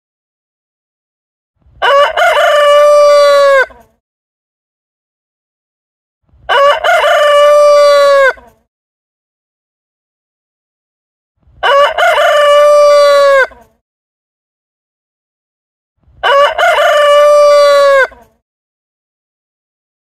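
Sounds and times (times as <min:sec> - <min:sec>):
rooster crowing: 0:01.8 - 0:03.8, 0:06.5 - 0:08.5, 0:11.6 - 0:13.6, 0:16.2 - 0:18.3.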